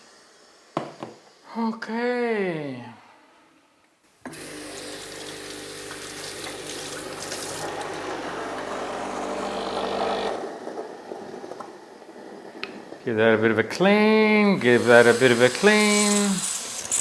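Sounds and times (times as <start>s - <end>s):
steam wand hissing: 0.0s - 1.4s, 13.8s - 17.0s
pump humming: 4.3s - 10.4s, 14.5s - 17.0s.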